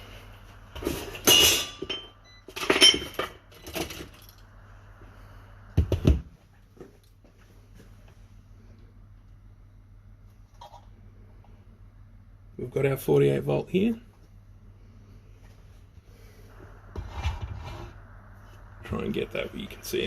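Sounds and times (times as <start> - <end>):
metal tools clattering: 0.9 - 4.4.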